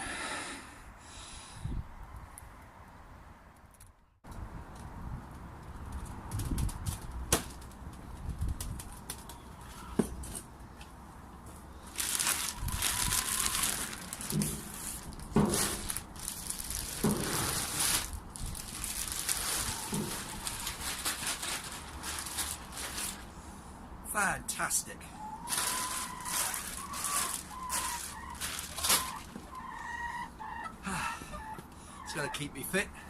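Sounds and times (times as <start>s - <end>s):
manure being scraped: 25.4s - 29.8s.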